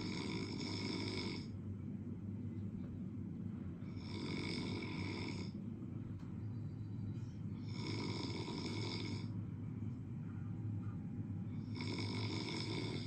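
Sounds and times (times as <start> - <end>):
steady low hum: 0.0 - 13.0
snoring with whistling tone: 7.7 - 9.3, 11.7 - 13.0.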